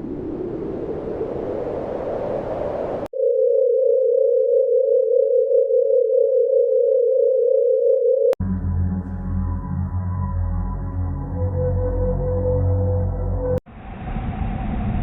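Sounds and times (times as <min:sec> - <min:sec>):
noisy rushing rumble: 0:13.7 - 0:15.0.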